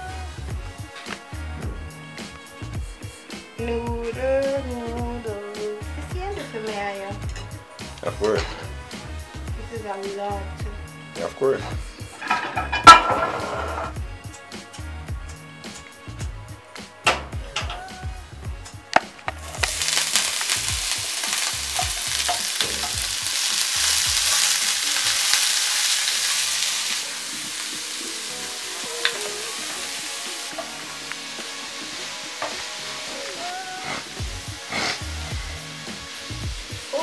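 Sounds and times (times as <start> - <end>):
noodles sizzling in a pan: 0.0 - 1.4, 4.6 - 37.0
music with bass beat: 0.0 - 25.3, 26.8 - 37.0
stirring in a pan: 18.6 - 36.9.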